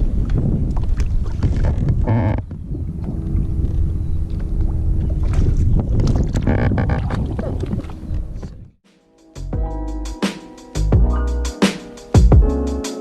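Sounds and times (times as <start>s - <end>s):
wind buffeting microphone: 0.0s - 8.8s
outboard motor rumble: 0.2s - 8.8s.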